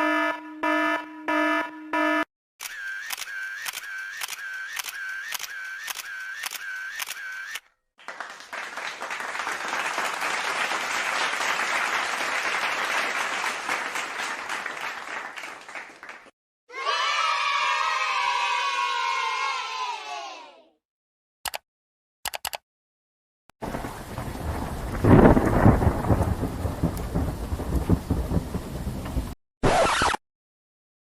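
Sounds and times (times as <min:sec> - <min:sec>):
camera shutter clicks: 0:02.6 - 0:07.6
applause: 0:08.0 - 0:16.4.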